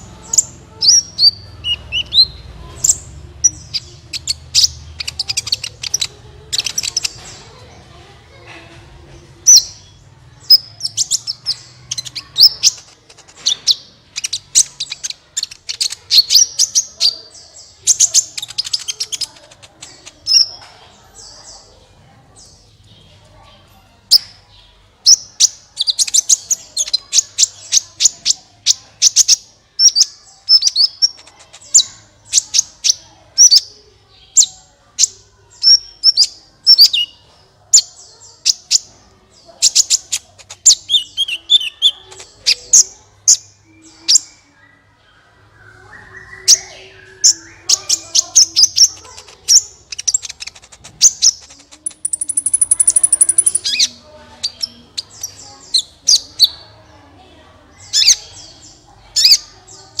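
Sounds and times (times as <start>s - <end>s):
bird chirping: 0.0s - 8.0s, 9.3s - 23.5s, 24.1s - 56.8s
high thin bird trill: 51.2s - 53.9s.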